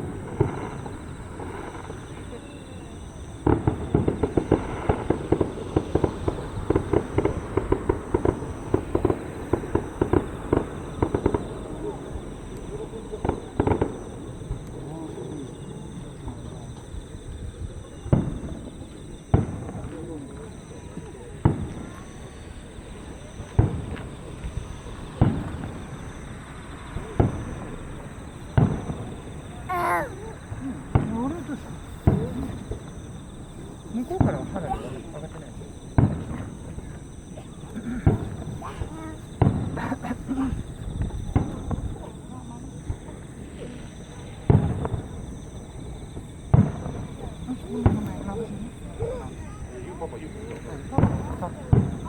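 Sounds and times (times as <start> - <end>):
fireworks bangs and cracks: 0.0 - 52.0
person's voice: 29.7 - 32.6, 34.0 - 35.1.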